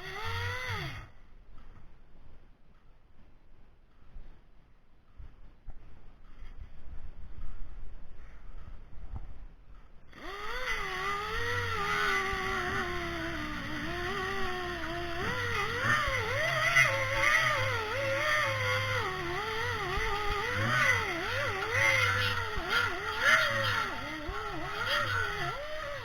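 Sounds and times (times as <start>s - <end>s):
high-speed motor whining: 0.0s - 1.2s, 10.1s - 26.0s.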